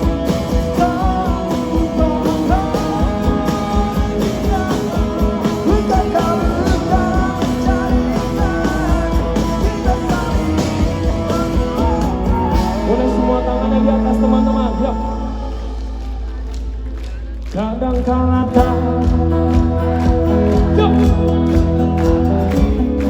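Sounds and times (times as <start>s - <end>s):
person singing: 0.0s - 16.9s, 17.5s - 23.0s
guitar melody: 0.0s - 17.7s, 18.3s - 23.0s
live pop-rock band: 0.0s - 23.0s.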